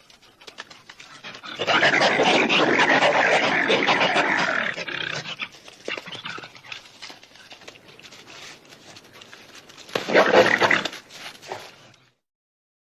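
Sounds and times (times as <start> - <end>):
breathy animal rasps: 0.1 - 8.5
harsh animal call: 1.1 - 6.8, 10.0 - 11.7.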